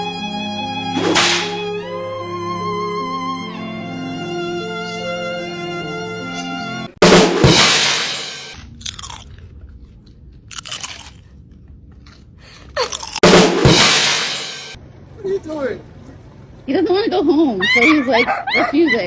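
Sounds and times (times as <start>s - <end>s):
loud crashes: 1.0s - 1.7s, 7.0s - 8.6s, 13.2s - 14.8s.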